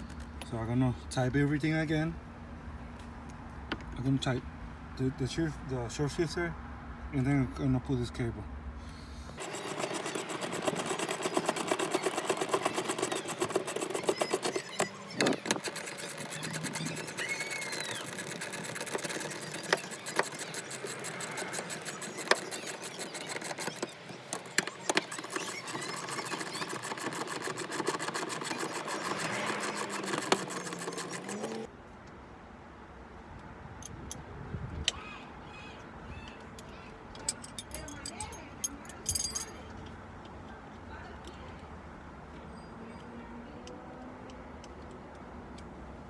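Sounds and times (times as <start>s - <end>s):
rapid mechanical clatter: 9.4s - 31.7s.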